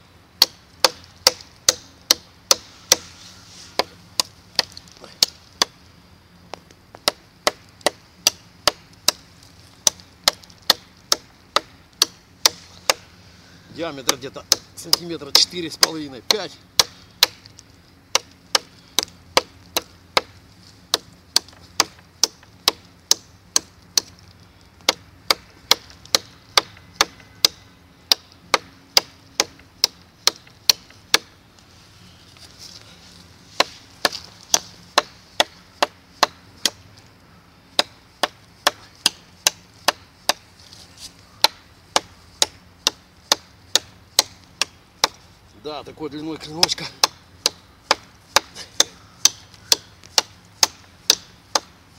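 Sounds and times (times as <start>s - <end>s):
knife chopping wet branch: 14.0s - 17.5s, 18.1s - 24.2s, 24.8s - 31.3s, 33.6s - 36.8s, 37.8s - 40.4s, 41.4s - 45.2s, 46.5s - 51.7s.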